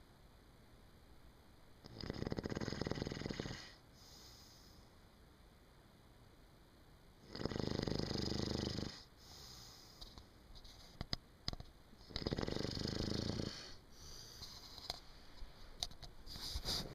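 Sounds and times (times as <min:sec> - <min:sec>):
person snoring loudly: 0:01.9 - 0:03.8, 0:07.2 - 0:09.1, 0:12.1 - 0:13.8.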